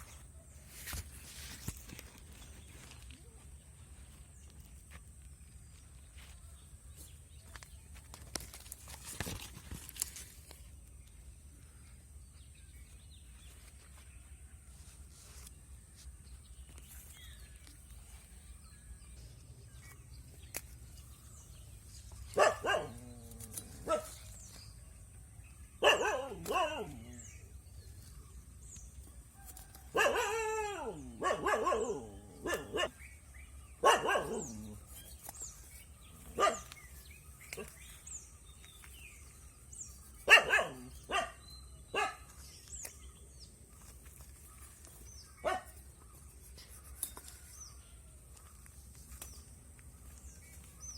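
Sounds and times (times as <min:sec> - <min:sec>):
dog barking: 0:22.3 - 0:23.2, 0:23.8 - 0:24.1, 0:25.8 - 0:27.2, 0:29.9 - 0:33.0, 0:33.8 - 0:34.7, 0:36.4 - 0:36.7, 0:40.2 - 0:42.3, 0:45.4 - 0:45.7.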